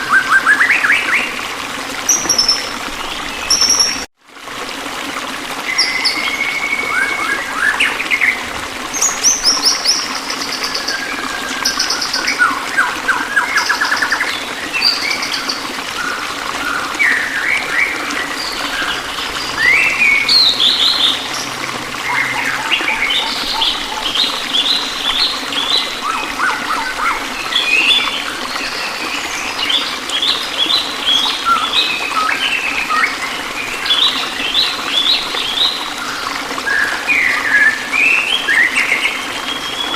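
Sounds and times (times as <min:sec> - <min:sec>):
trickle of running water: 0:00.0 - 0:39.9
songbirds chirping and trilling: 0:16.8 - 0:28.8.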